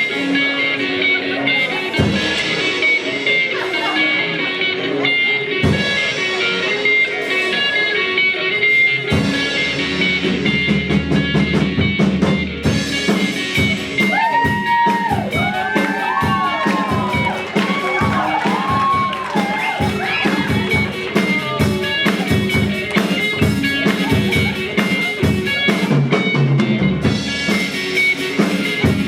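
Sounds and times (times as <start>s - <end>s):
blues-rock band playing: 0.0s - 29.0s
bent lead guitar notes: 15.3s - 29.0s.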